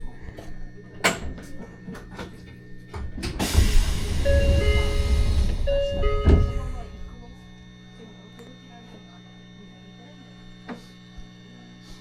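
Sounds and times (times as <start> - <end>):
train door chime: 3.4 - 7.5
low rumble: 3.4 - 8.0.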